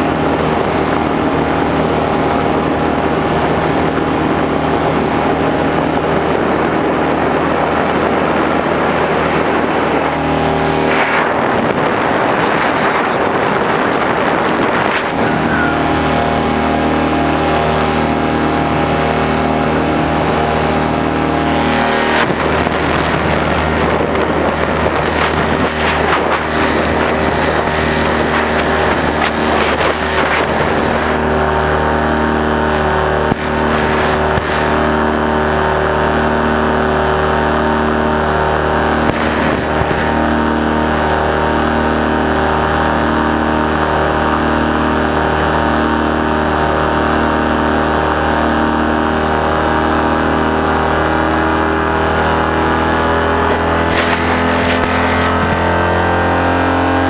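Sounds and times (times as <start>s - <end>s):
engine running steadily: 0.0s - 57.0s
rush of noise: 7.1s - 35.8s, 52.7s - 57.0s.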